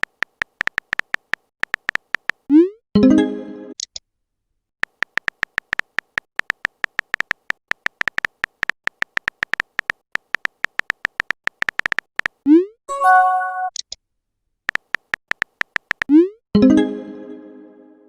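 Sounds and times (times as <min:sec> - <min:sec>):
phone keyboard typing ticks: 0:00.0 - 0:02.5, 0:04.8 - 0:12.4, 0:14.7 - 0:16.2.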